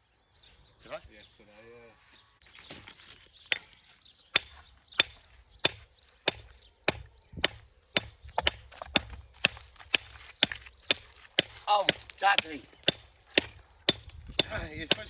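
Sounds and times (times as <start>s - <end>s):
hammer striking stone: 4.4s - 15.0s.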